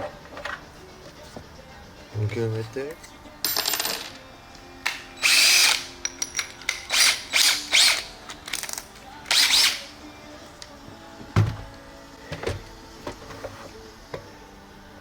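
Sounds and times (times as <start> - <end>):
power drill boring holes: 5.2 - 5.9, 6.8 - 8.1, 9.3 - 9.9.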